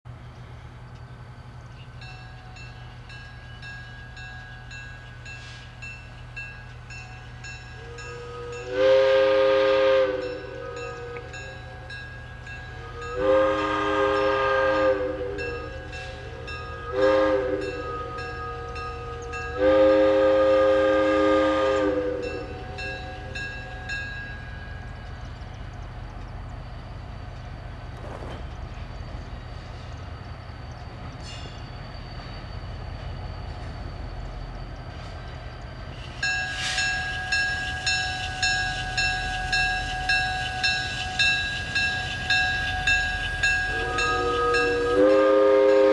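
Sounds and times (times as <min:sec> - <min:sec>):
locomotive air whistle blasts: 0:07.8 - 0:12.0, 0:12.7 - 0:24.0, 0:34.9 - 0:45.9
bell ringing steadily: 0:10.2 - 0:13.2, 0:22.2 - 0:25.1, 0:36.2 - 0:45.0.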